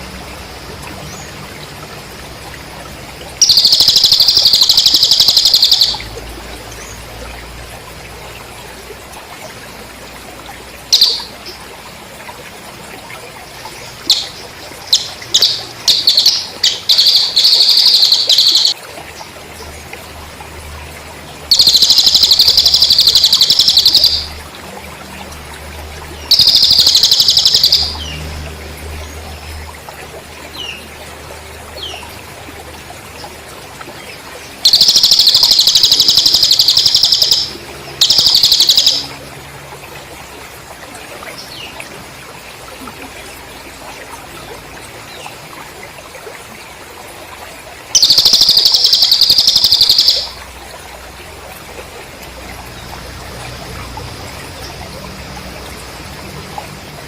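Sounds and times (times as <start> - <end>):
trickling stream: 0.0 - 57.0
high-pitched pulsing bird trills: 3.3 - 7.0, 10.8 - 11.6, 13.9 - 18.8, 21.5 - 24.6, 26.1 - 28.2, 34.5 - 39.3, 47.9 - 50.7.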